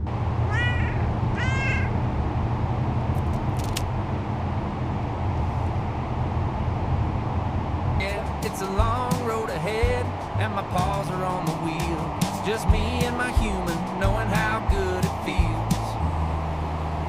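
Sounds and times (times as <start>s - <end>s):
steady low rumble: 0.0s - 17.0s
cat meowing: 0.5s - 2.0s.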